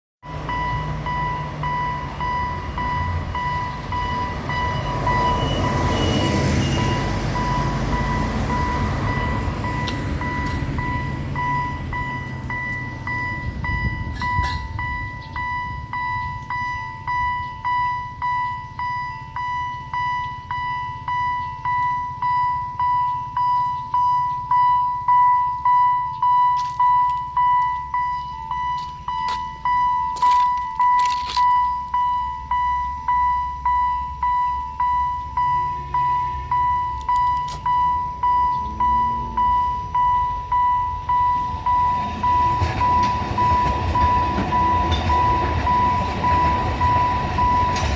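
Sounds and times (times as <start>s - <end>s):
level-crossing warning bell dinging: 0.2s - 47.9s
train engine rumble: 0.3s - 47.9s
train wheel noise: 40.7s - 47.9s.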